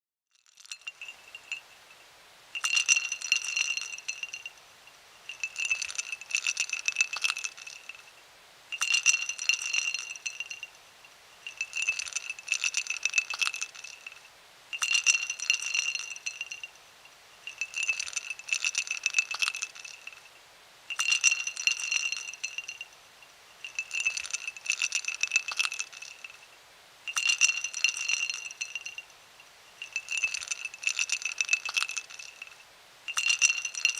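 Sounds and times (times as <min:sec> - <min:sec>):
ice cubes clinking in a glass: 0:00.4 - 0:01.7, 0:02.6 - 0:04.6, 0:05.2 - 0:08.1, 0:08.7 - 0:10.8, 0:11.4 - 0:16.8, 0:17.4 - 0:20.3, 0:20.9 - 0:23.0, 0:23.6 - 0:26.5, 0:27.1 - 0:29.1, 0:29.8 - 0:33.9
glass ringing: 0:00.4 - 0:26.5, 0:27.1 - 0:33.9.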